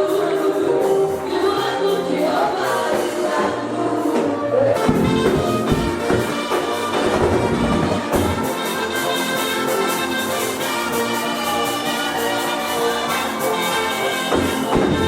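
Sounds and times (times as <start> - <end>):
brass music: 3.1 - 15.0.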